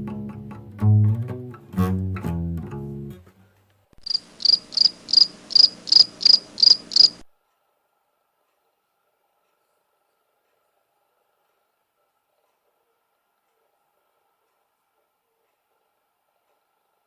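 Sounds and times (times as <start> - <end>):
background music with bass and guitar: 0.0 - 3.4
cricket chirping: 4.0 - 7.3.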